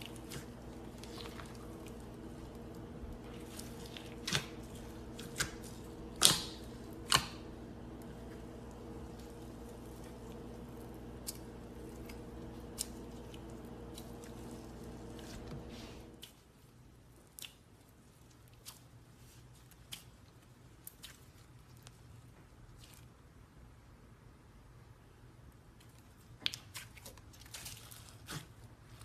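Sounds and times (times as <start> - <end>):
background hum: 0.0 - 29.0
slime squishing with clicks and pops: 3.5 - 14.5.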